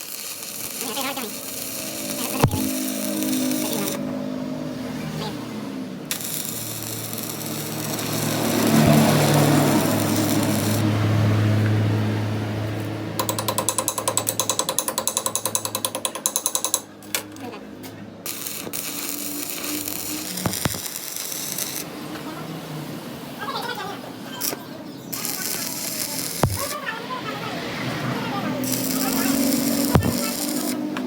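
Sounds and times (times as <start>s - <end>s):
scattered knocks: 13.2s - 16.9s.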